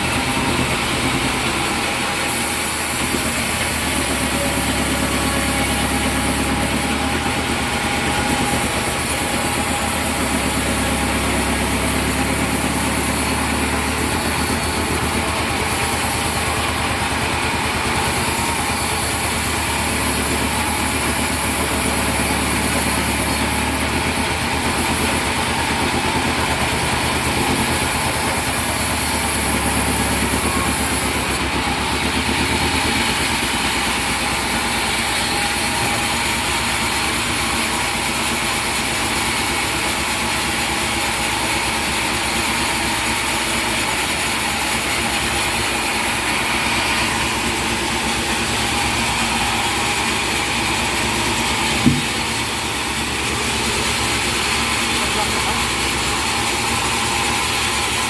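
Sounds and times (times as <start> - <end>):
sawmill machinery droning: 0.0 - 58.0
sharp knock: 51.7 - 52.3.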